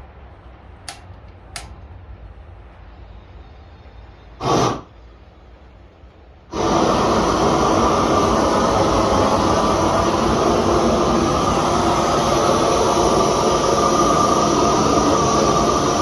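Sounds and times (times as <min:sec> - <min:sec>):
torch flame roaring: 0:04.4 - 0:05.0, 0:06.5 - 0:16.0.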